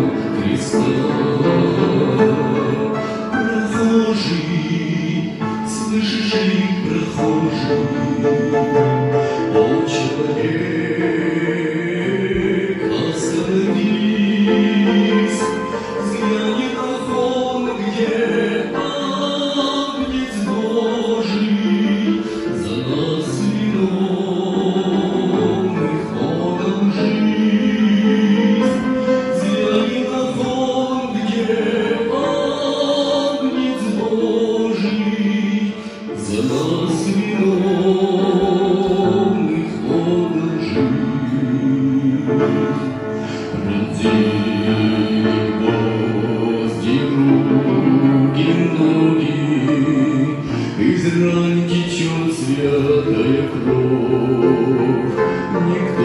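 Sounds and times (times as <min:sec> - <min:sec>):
choir singing a hymn: 0:00.0 - 0:56.0.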